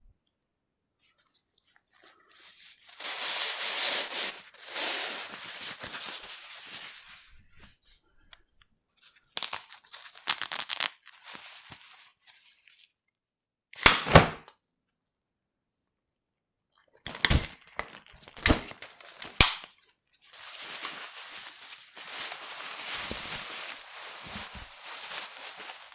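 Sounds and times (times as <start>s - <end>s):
umbrella ribs snapping and clicking: 18.4s - 19.7s
umbrella canopy swishing: 20.6s - 25.9s.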